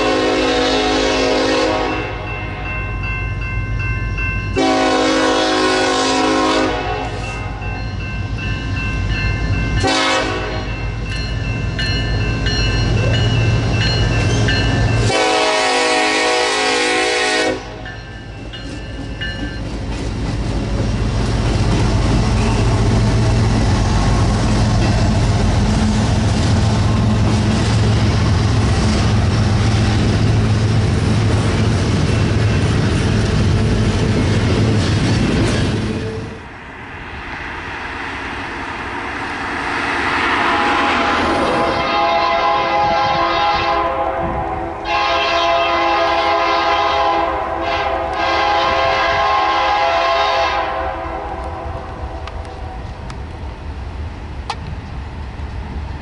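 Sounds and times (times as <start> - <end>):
train horn blast: 0.0 - 2.3, 4.6 - 7.5, 9.8 - 10.7, 15.0 - 17.9, 40.5 - 52.3
train rumbling past: 0.0 - 56.0.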